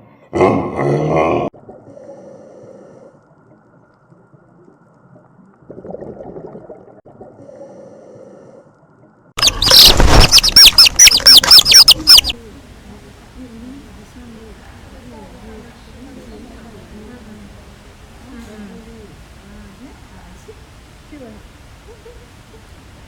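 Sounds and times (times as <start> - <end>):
low pitched grunt: 0.3 - 3.0
bird calling in rapid chirps: 9.4 - 12.4.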